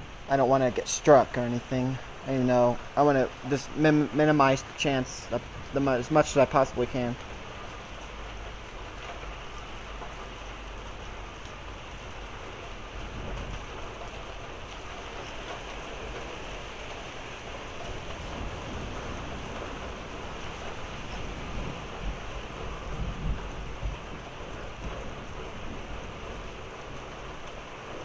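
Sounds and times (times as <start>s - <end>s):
rain and hail hitting ground: 0.0s - 28.0s
low thunder rumble: 1.6s - 7.3s, 12.9s - 14.0s, 17.9s - 27.3s.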